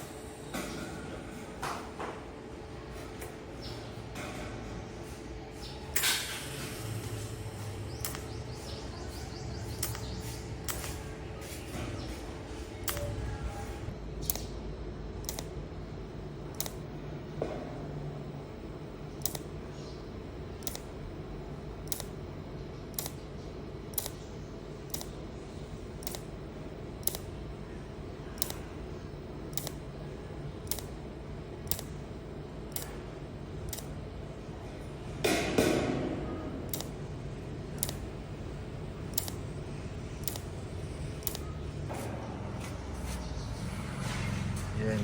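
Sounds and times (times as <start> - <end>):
welder low hum: 4.7 - 45.0
sharp clicks: 7.9 - 11.0, 12.8 - 13.4, 14.2 - 14.6, 15.2 - 15.6, 16.5 - 16.8, 19.2 - 19.5, 20.6 - 20.9, 21.8 - 22.2, 22.9 - 23.2, 23.9 - 24.2, 24.9 - 25.2, 26.0 - 26.3, 27.0 - 27.3, 28.4 - 28.7, 29.5 - 29.8, 30.6 - 30.9, 31.6 - 32.0, 32.7 - 33.0, 33.7 - 33.9, 36.7 - 37.0, 37.7 - 38.1, 39.1 - 39.5, 40.1 - 41.6.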